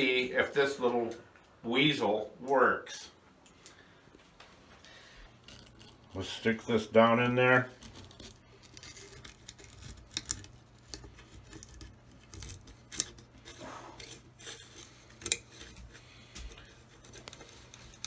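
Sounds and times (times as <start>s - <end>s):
drain snake scraping: 5.3s - 18.0s.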